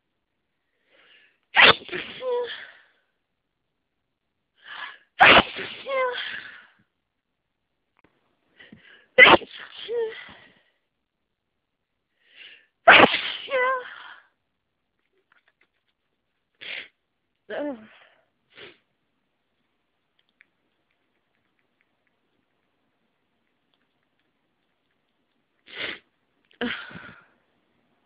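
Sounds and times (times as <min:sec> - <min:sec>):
person sneezing: 0:01.6 - 0:02.8, 0:04.8 - 0:06.7, 0:09.2 - 0:10.4, 0:12.9 - 0:14.2.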